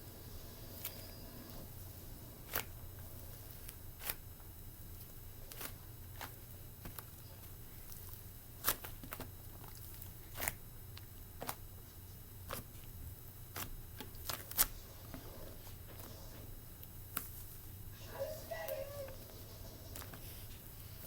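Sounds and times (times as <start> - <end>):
slime squished by hand: 2.4 - 4.3, 5.0 - 11.7.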